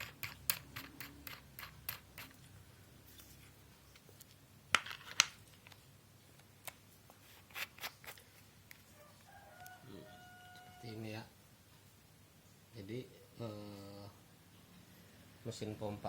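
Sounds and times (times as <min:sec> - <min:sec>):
metal parts clicking: 0:00.0 - 0:02.5.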